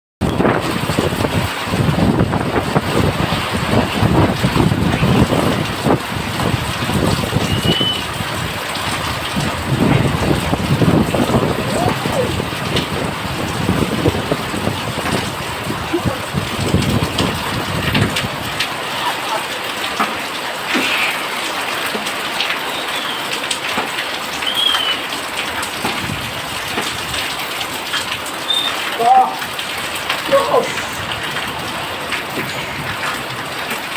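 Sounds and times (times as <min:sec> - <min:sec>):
wind buffeting microphone: 0:00.2 - 0:18.9, 0:25.4 - 0:28.4, 0:29.4 - 0:33.9
heavy rain falling: 0:00.2 - 0:33.9
low rumbling: 0:00.4 - 0:19.0.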